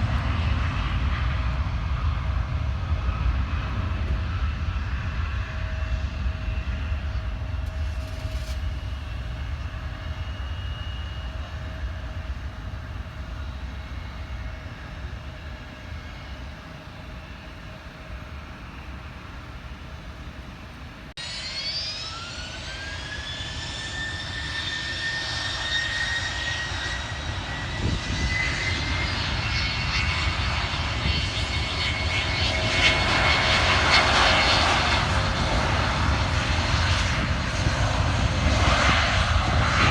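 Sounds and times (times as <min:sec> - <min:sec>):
jet engine rumble: 0:00.0 - 0:39.9
jet engine whine: 0:00.0 - 0:39.9.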